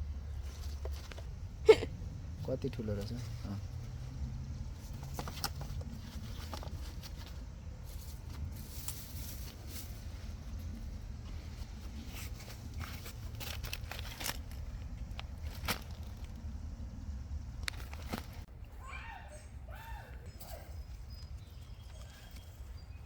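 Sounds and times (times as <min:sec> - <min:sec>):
steady low rumble: 0:00.0 - 0:18.7
soil and potatoes being dug: 0:04.9 - 0:16.7.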